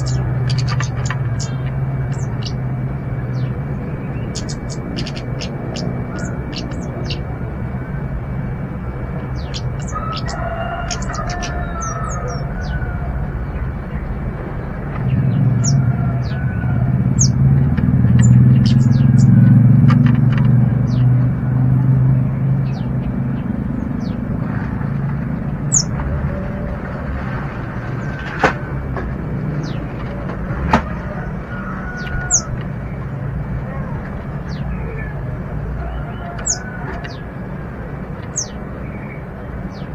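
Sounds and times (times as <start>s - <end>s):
low rumble: 0.0s - 30.6s
birds chirping: 0.0s - 39.9s.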